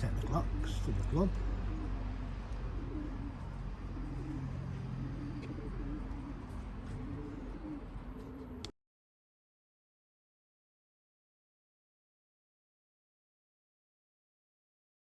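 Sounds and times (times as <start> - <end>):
pigeons cooing: 0.0 - 8.7
steady background hum: 0.0 - 8.7.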